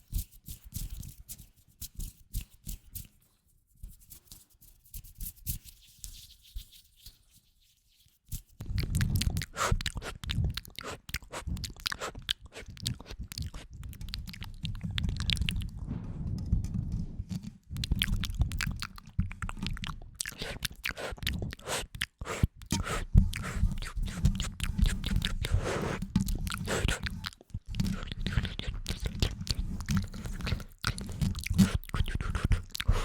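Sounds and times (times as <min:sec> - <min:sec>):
crunchy rubbing and crackling: 0:08.6 - 0:33.0.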